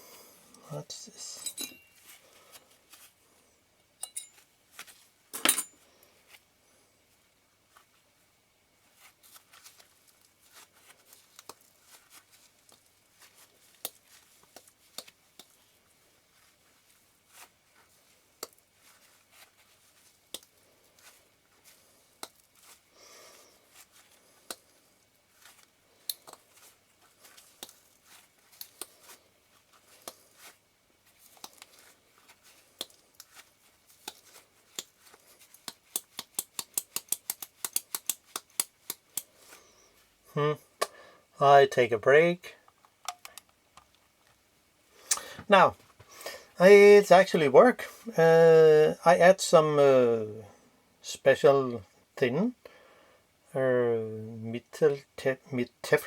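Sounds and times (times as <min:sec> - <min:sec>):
metal parts clicking and tapping: 0:04.0 - 0:04.4, 0:35.6 - 0:39.3.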